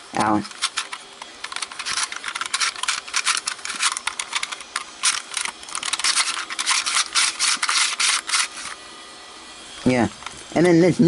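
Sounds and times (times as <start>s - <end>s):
packaging rustling: 0.2s - 8.8s.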